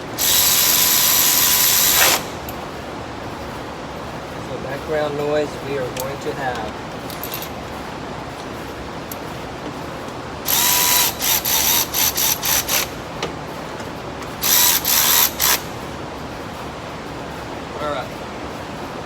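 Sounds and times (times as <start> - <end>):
cordless power tool whirring: 0.0 - 2.5, 10.4 - 13.0, 14.4 - 15.7
shop fans hissing: 0.0 - 19.0.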